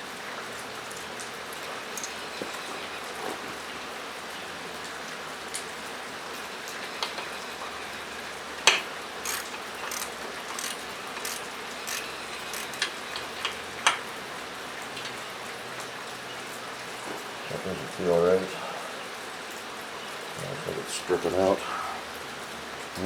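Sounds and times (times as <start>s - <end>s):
rain drumming on a metal roof: 0.0s - 23.0s
socket ratchet clicking: 1.9s - 2.2s, 9.2s - 13.6s.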